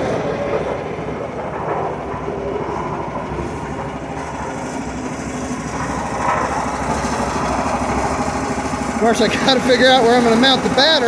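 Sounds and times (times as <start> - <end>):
small gasoline engine idling: 3.0 - 11.0.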